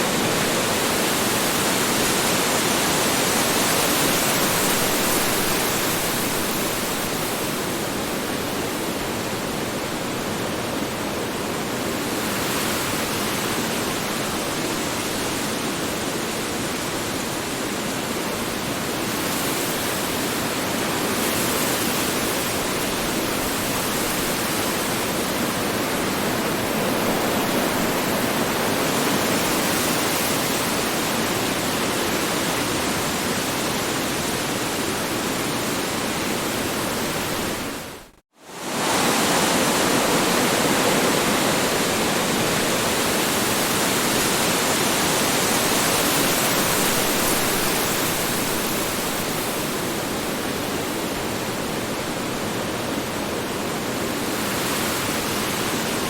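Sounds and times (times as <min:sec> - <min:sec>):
strong wind blowing: 0:22.6 - 0:56.0.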